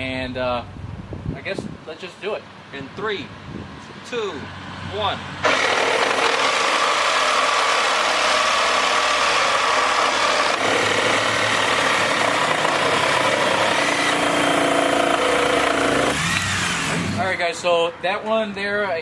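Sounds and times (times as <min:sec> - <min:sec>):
reciprocating saws cutting wood: 0:05.0 - 0:17.4.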